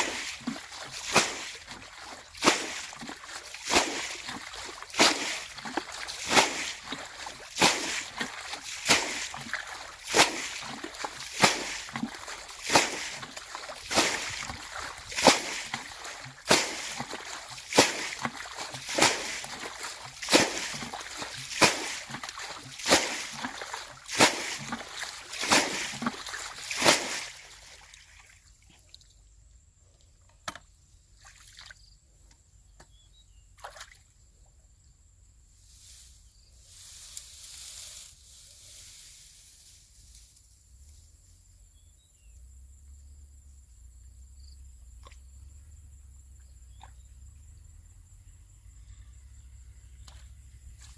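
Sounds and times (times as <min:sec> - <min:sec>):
water splashing: 0:00.0 - 0:28.3.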